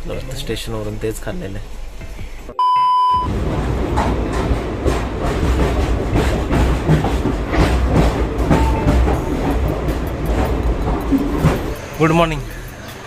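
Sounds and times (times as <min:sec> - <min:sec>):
train rumbling: 0:03.2 - 0:13.0
wheels clicking over rails: 0:03.3 - 0:13.0.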